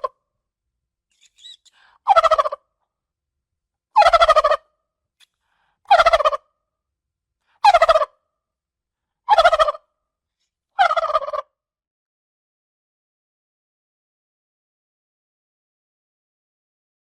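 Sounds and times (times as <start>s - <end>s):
turkey gobbling: 1.2s - 2.6s, 4.0s - 4.7s, 5.9s - 6.4s, 7.6s - 8.2s, 9.3s - 9.8s, 10.8s - 11.5s.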